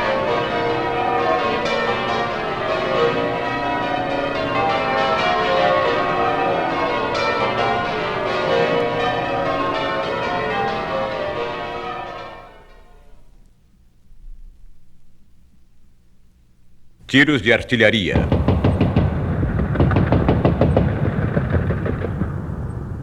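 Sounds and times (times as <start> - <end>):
church bells pealing: 0.0 - 13.4.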